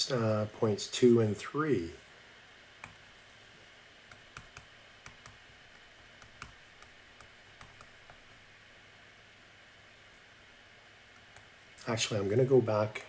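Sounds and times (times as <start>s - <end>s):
computer mouse clicks: 2.8s - 3.1s, 4.1s - 8.2s.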